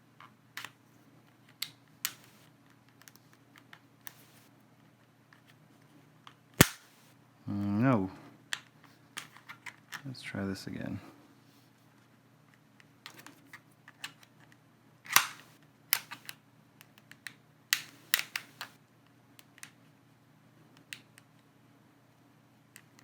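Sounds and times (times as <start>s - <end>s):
plastic clicks and snaps: 13.1s - 18.8s.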